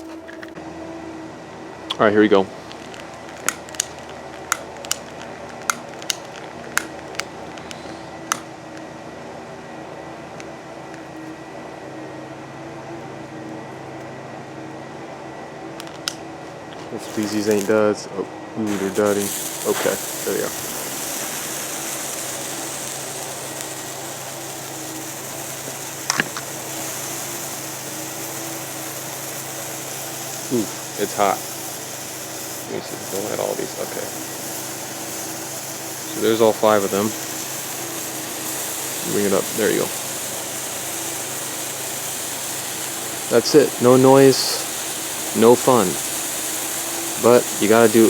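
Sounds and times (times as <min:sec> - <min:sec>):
sparklers fizzing: 0:00.0 - 0:00.6, 0:02.4 - 0:09.0, 0:16.8 - 0:48.0
lighter clicking: 0:02.7 - 0:08.9, 0:18.7 - 0:48.0.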